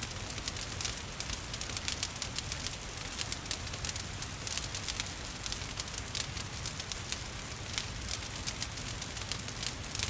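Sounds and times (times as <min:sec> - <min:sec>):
wood fire crackling: 0:00.0 - 0:10.0.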